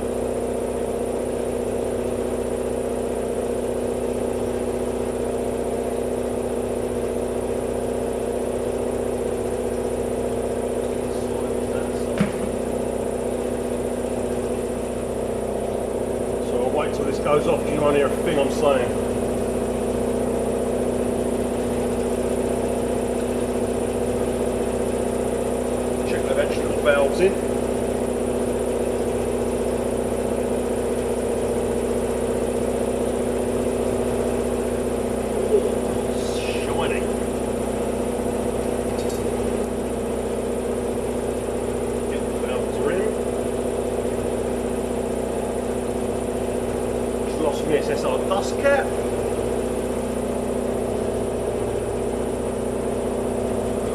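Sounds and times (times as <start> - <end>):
air compressor droning: 0.0 - 53.9
short knock: 12.1 - 12.6.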